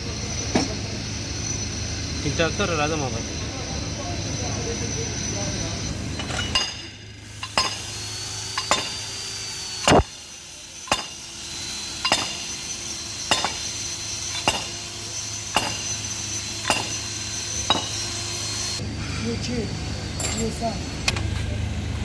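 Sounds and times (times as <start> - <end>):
hammer striking metal: 6.2 - 7.9, 8.6 - 9.1, 10.8 - 11.3, 12.0 - 12.6, 13.2 - 18.1.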